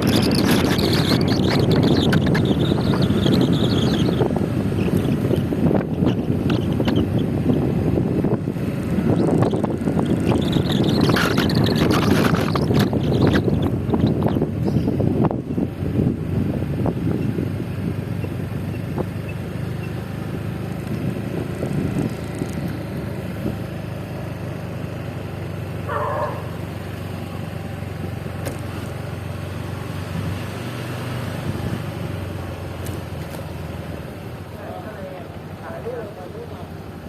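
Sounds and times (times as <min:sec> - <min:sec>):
motor scooter engine running: 0:00.0 - 0:29.8
road and wind noise: 0:00.0 - 0:37.0.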